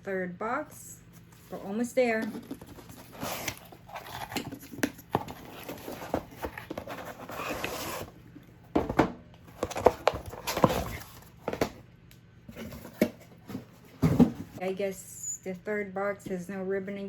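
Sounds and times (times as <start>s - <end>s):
knocks and thumps of box: 8.7s - 11.8s, 12.5s - 14.6s.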